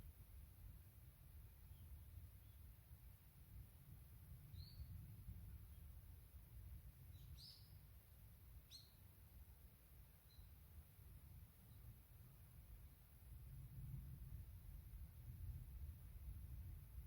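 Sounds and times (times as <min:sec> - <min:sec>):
low wind rumble: 0:03.5 - 0:07.2, 0:11.4 - 0:17.0
bird chirps: 0:04.5 - 0:04.9, 0:07.1 - 0:07.8, 0:08.7 - 0:09.0.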